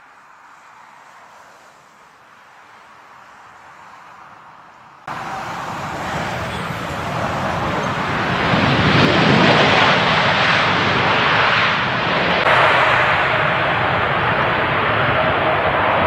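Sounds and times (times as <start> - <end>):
jet engines roaring: 5.0 - 16.0.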